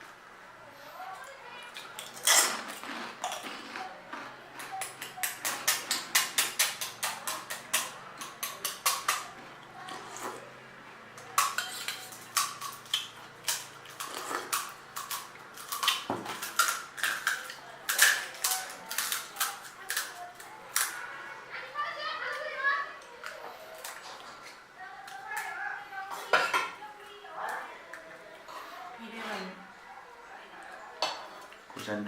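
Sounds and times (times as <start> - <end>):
crisp crunching of food: 1.6 - 10.5, 11.2 - 21.0.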